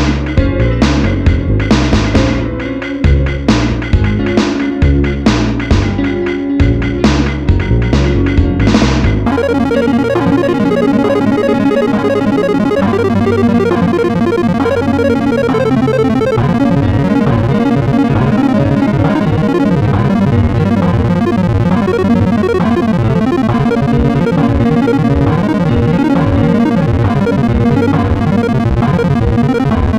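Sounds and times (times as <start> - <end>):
distorted electric guitar with delay: 9.3 - 29.9.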